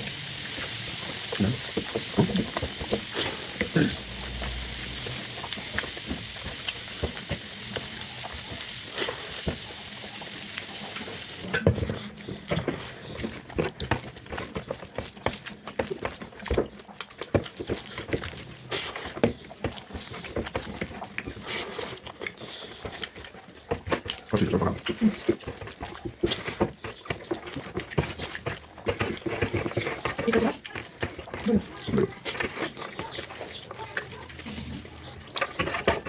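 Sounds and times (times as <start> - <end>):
steady sizzling hiss: 0.0 - 20.6.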